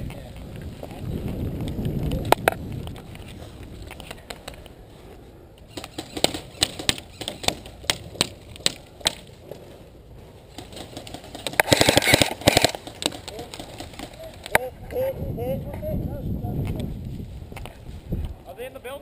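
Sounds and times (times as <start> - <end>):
airsoft guns firing: 5.7 - 9.2, 10.6 - 14.3.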